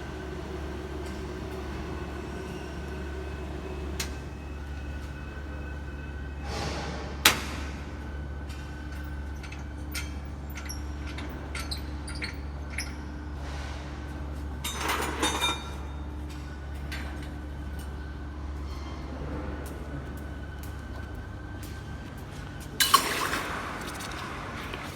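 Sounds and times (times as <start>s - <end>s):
low hum: 0.0s - 8.4s.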